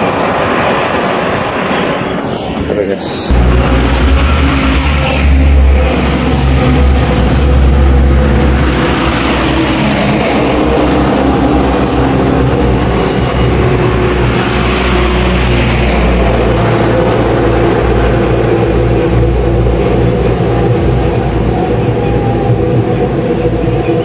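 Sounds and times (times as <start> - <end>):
heavy vehicles passing on highway: 0.0 - 24.0.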